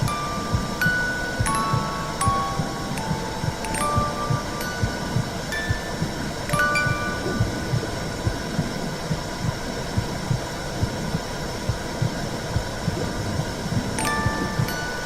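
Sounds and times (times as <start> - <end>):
low heartbeat-like thump: 6.9 - 14.7.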